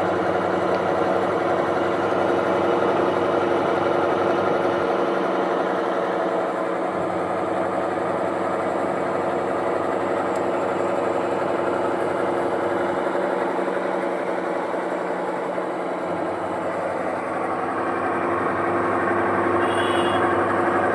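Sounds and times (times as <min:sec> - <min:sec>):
washing machine motor hum: 0:00.0 - 0:20.9.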